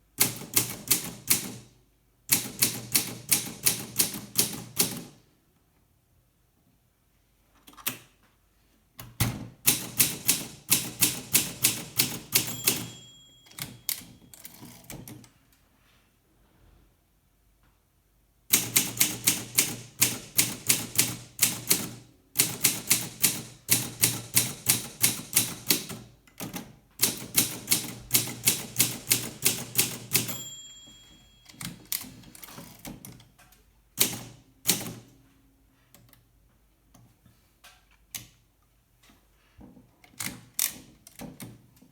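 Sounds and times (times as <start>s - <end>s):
manual typewriter typing: 0.2s - 1.7s, 2.3s - 5.1s, 9.6s - 15.3s, 18.5s - 33.3s, 34.0s - 35.0s
typewriter bell ding: 11.9s - 14.5s, 29.5s - 32.0s.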